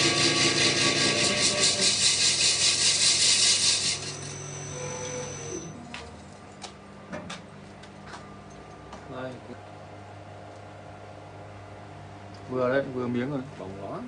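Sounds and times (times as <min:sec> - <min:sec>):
cutting tool hissing on metal: 0:00.0 - 0:05.4
machine hum: 0:00.0 - 0:13.0.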